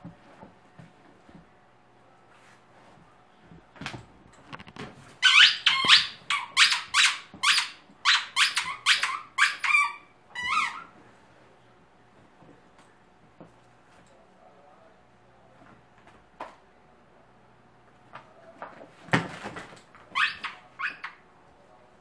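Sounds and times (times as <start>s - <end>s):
squeaky dog toy squeaking: 5.2s - 10.9s, 20.1s - 21.2s.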